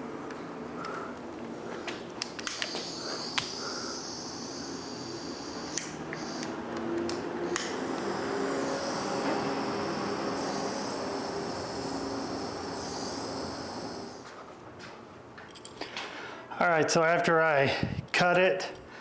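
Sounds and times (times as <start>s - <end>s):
tools clicking and tapping: 2.2s - 3.6s
heat gun hissing and humming: 2.2s - 14.4s.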